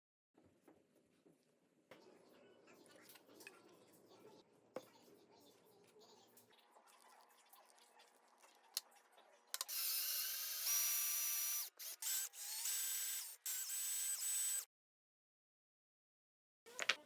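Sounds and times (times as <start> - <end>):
electric drill whining: 9.6 - 14.7.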